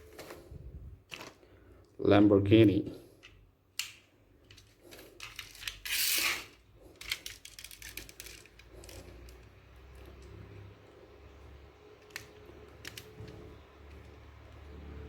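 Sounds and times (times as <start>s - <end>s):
toy car scraping: 4.6s - 9.5s
toy car clicks and knocks: 7.0s - 9.5s, 12.0s - 14.6s.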